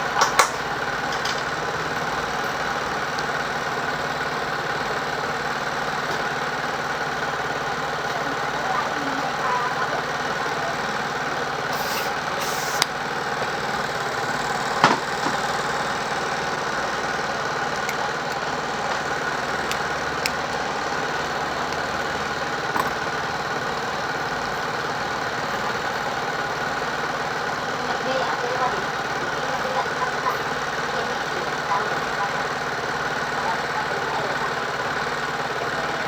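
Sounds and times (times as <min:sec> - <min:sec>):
sharp taps: 0:17.7 - 0:20.6.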